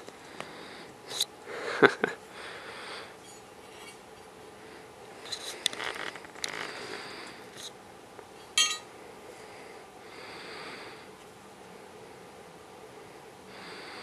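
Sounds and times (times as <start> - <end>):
metal clink: 8.6 - 8.9.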